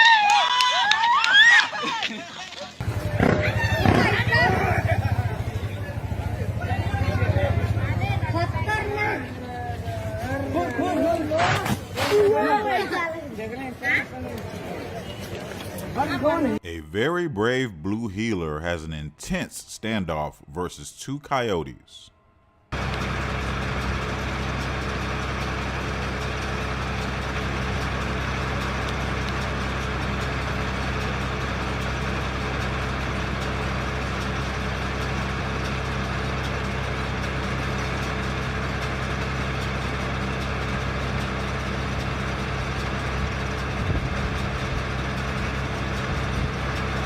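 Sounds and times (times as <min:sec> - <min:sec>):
steady engine hum: 0:00.0 - 0:21.6, 0:22.2 - 0:47.0.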